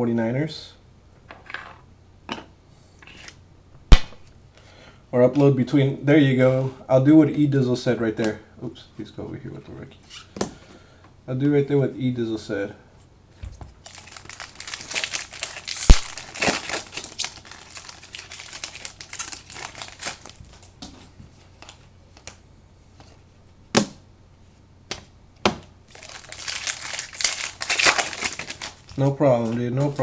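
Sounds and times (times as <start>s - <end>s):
sharp knock: 3.9s - 4.3s
plastic wrapping crinkling: 13.8s - 22.4s, 25.9s - 30.0s.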